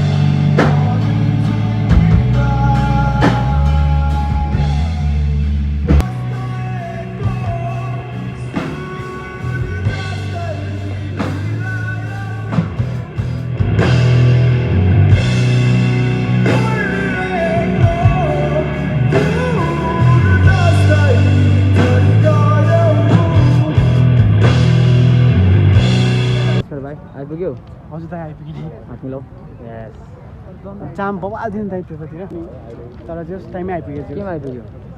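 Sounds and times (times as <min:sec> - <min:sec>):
man singing: 0:00.0 - 0:13.4, 0:16.0 - 0:24.4
drum kit: 0:00.0 - 0:26.6
electric guitar: 0:00.0 - 0:26.6
heavy bass: 0:00.0 - 0:26.7.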